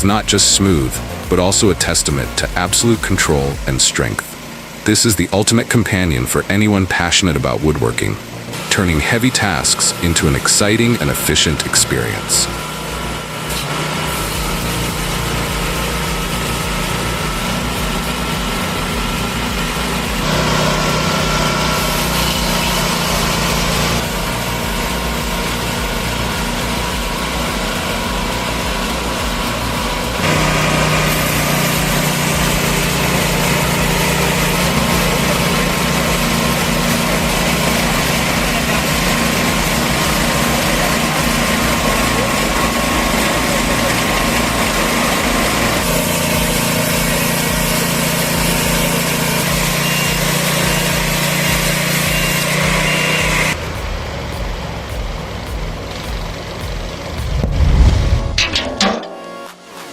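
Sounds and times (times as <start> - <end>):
small engine saw running: 0.0 - 57.4.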